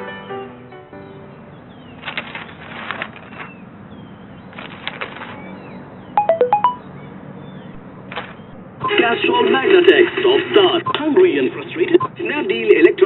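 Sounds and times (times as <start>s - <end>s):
electronic beep melody: 6.2s - 6.8s.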